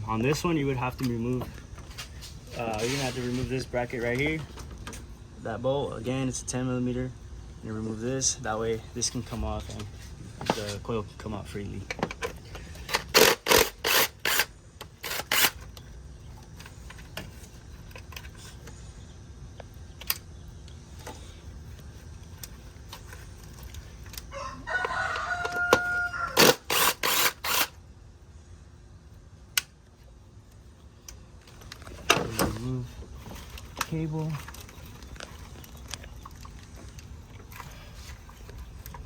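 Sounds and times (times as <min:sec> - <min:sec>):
rooster crowing: 0:24.2 - 0:26.7.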